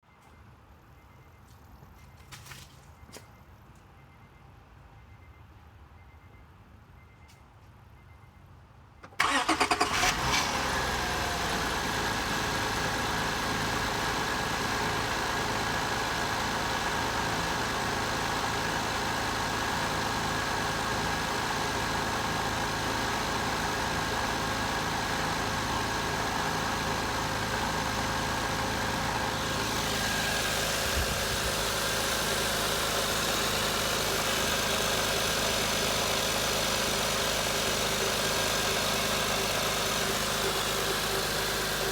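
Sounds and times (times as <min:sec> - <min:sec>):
car engine cranking and starting: 0:09.0 - 0:41.9
car engine idling: 0:09.1 - 0:41.9.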